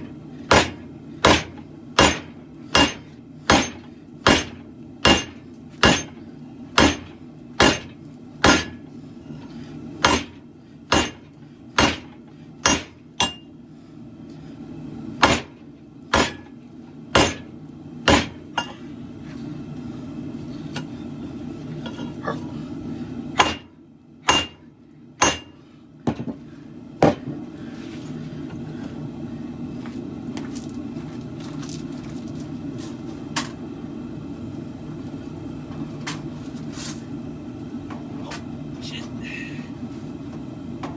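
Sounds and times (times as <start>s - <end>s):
hammer striking steel on anvil: 0.5s - 6.2s, 6.8s - 8.8s, 10.0s - 13.5s, 15.2s - 16.6s, 17.2s - 17.5s, 18.1s - 18.8s, 23.4s - 24.6s, 25.2s - 25.6s.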